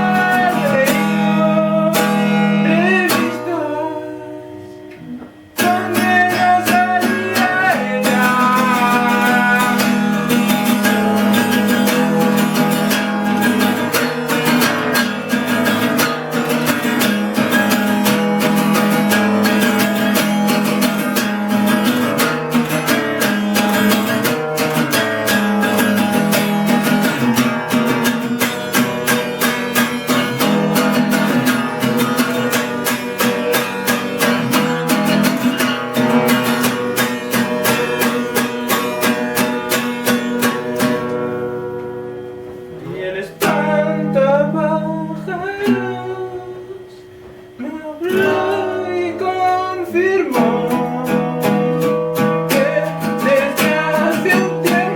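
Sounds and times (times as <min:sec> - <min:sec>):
person singing: 0:00.0 - 0:12.6, 0:42.8 - 0:54.9
acoustic guitar strumming: 0:00.0 - 0:54.9.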